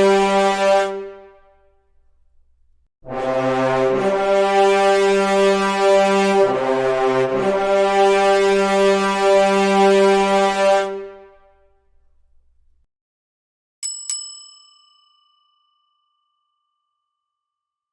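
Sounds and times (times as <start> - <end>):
war horn long note: 0.0 - 1.6, 3.0 - 11.8
metallic dings: 13.8 - 17.2.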